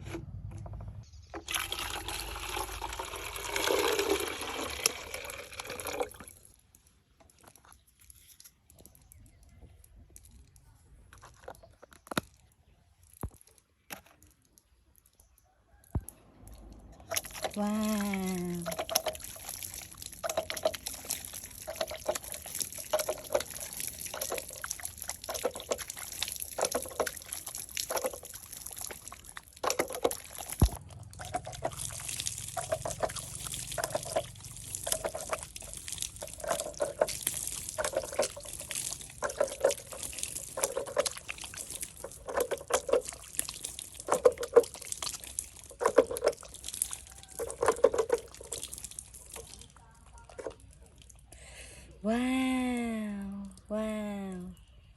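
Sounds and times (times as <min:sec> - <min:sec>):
water sloshing and trickling: 0:00.0 - 0:51.4
water splash: 0:16.7 - 0:49.7.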